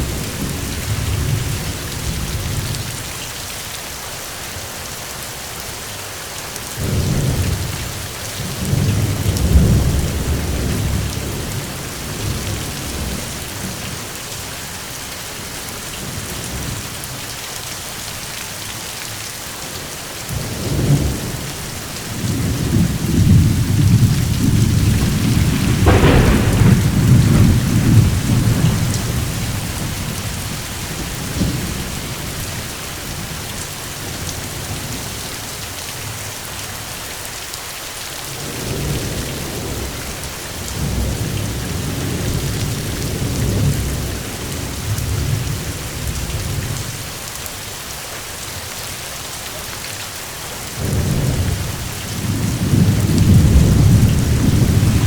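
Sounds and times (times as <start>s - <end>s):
steady rain falling: 0.0s - 55.0s
thunder rumbling: 20.4s - 33.5s, 50.8s - 55.0s
sharp thunder crack: 22.3s - 32.4s, 52.2s - 55.0s.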